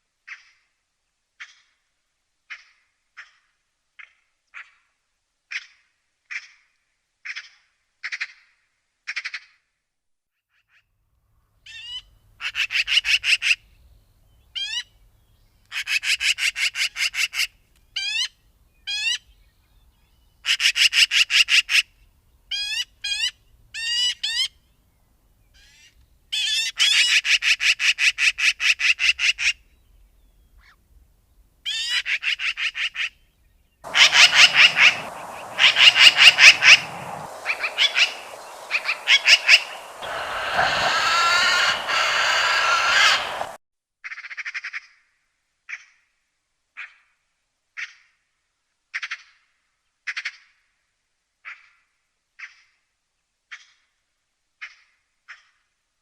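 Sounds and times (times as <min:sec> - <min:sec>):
magpie chattering: 0:33.9 - 0:43.6
rushing background noise: 0:33.9 - 0:43.6.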